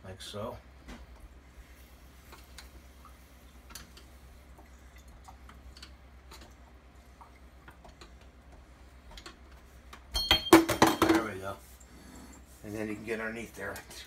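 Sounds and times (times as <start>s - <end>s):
low steady hum: 0.0s - 14.0s.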